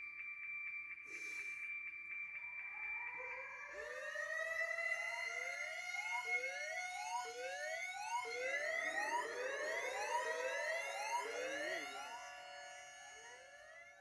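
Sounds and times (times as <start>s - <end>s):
siren wailing with whoops: 2.6s - 12.5s.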